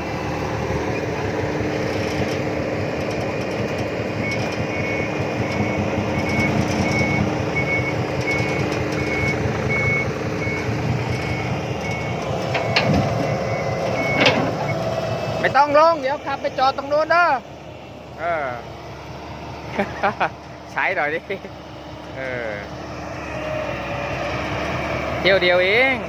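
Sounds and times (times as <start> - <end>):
diesel truck engine running: 0.0 - 26.0
reversing alarm beeps: 4.2 - 14.9.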